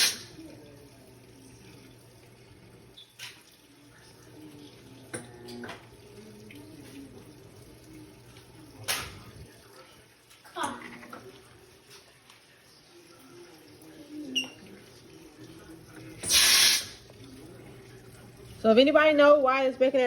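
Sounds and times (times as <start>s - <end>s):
water pouring in: 0.0s - 18.7s
washing machine running: 0.0s - 20.0s.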